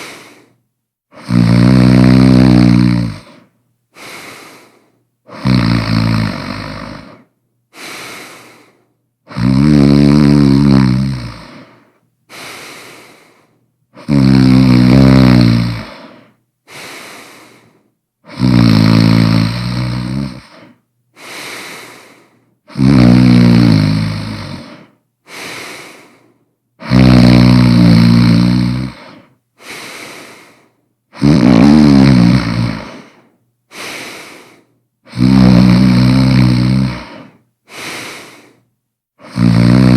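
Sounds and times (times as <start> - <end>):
person snoring loudly: 0.0 - 0.5, 1.1 - 4.7, 5.3 - 7.2, 9.3 - 13.2, 14.0 - 26.2, 26.8 - 38.6, 39.2 - 39.9
quiet breath: 0.0 - 1.4, 2.5 - 5.4, 6.4 - 9.1, 11.2 - 14.2, 15.8 - 18.5, 19.4 - 22.8, 24.2 - 26.9, 28.5 - 31.2, 32.7 - 39.9.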